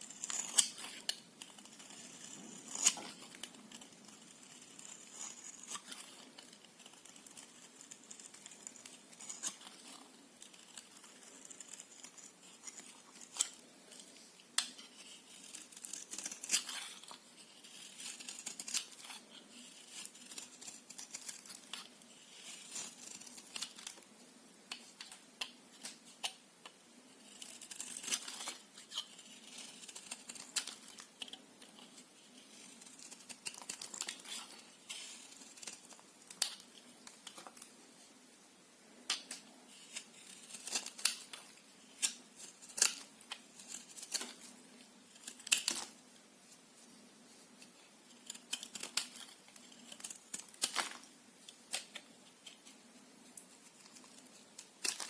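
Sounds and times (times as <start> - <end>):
blade scraping soap: 0.1 - 23.9, 27.2 - 31.0, 39.8 - 41.3.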